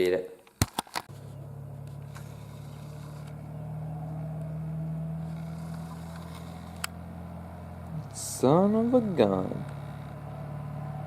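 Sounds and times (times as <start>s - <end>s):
sharp click: 0.5s - 1.1s
low engine hum: 1.1s - 11.0s.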